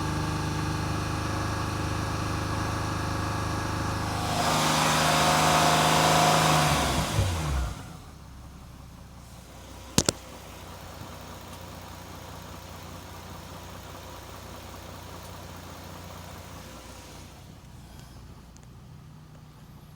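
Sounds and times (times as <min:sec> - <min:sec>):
car engine revving and idling: 0:00.0 - 0:19.9.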